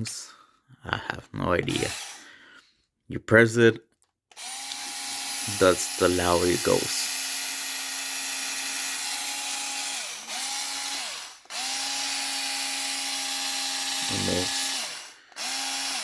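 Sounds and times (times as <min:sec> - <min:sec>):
cordless screwdriver motor whirring: 0:01.7 - 0:02.2, 0:04.3 - 0:16.0.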